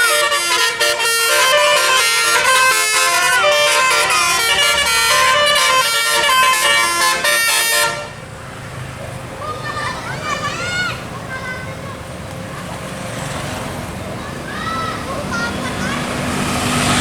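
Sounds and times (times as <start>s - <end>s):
multi-tone bus horns playing tune: 0.0s - 8.6s
faint voices: 8.0s - 17.0s.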